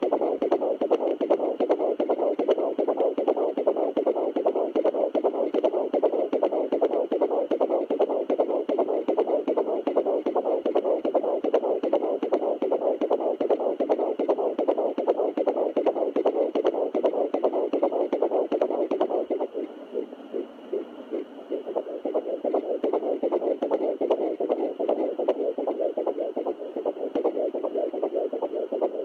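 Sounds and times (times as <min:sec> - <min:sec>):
fetal heartbeat on doppler speaker: 0:00.0 - 0:29.0.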